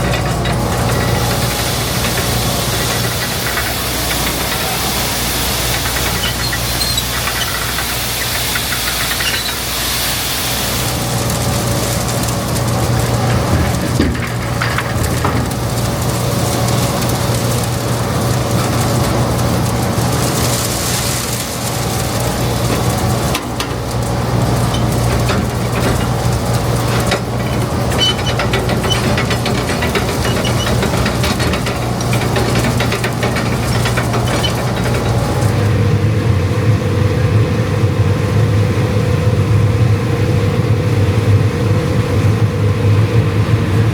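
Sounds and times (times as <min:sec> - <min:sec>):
clicks and rattles: 0:00.0 - 0:09.7, 0:10.8 - 0:35.7
heavy vehicle engine running: 0:00.0 - 0:43.9.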